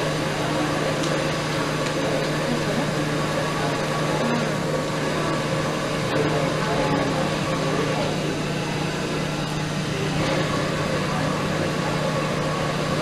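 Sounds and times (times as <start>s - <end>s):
murmur of distant voices: 0.0s - 13.0s.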